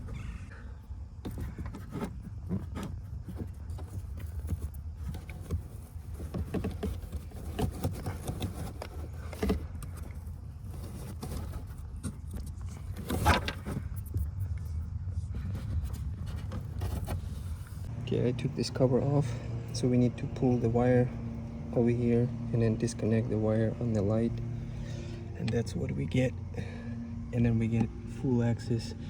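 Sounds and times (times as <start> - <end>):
steady low rumble: 11.6 - 29.0.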